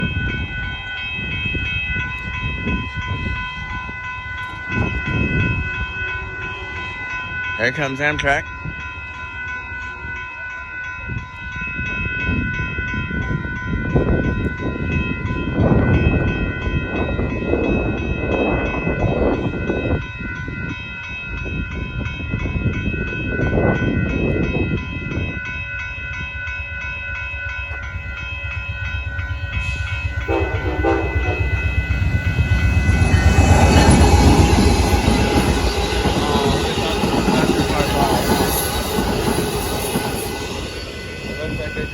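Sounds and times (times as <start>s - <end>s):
train passing on rails: 0.0s - 41.9s
train horn blasts: 29.6s - 36.2s.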